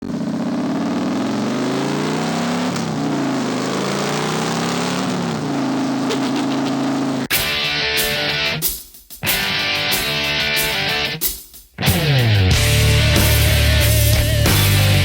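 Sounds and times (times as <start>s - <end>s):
motorcycle engine accelerating: 0.0s - 7.3s, 11.8s - 15.0s.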